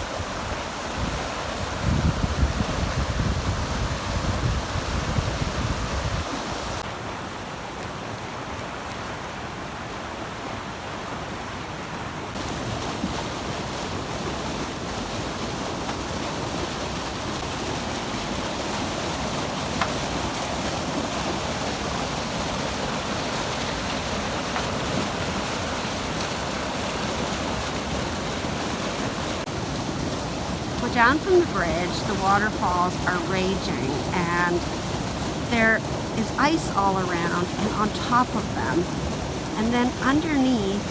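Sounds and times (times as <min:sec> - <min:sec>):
fast-flowing water rushing: 0:00.0 - 0:40.9
wind buffeting microphone: 0:00.2 - 0:06.8.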